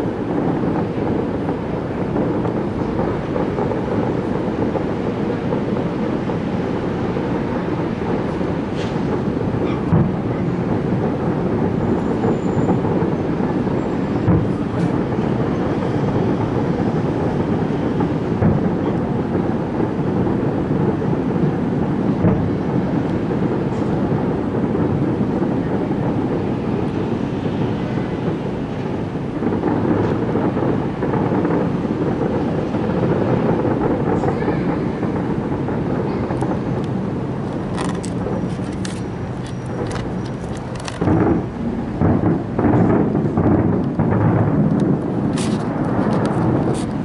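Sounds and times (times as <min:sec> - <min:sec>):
fireworks crackling: 0:00.0 - 0:47.0
fireworks rumbling: 0:00.0 - 0:47.0.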